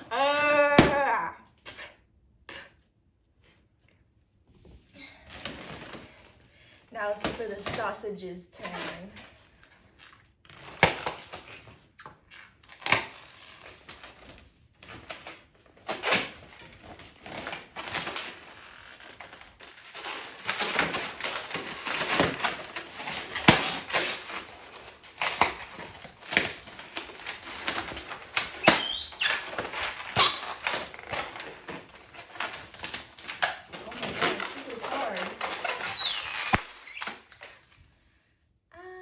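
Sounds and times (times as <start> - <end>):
rubber balloons squeaking and rustling: 0.0 - 1.9, 4.8 - 37.8
sharp cracks: 34.0 - 37.3.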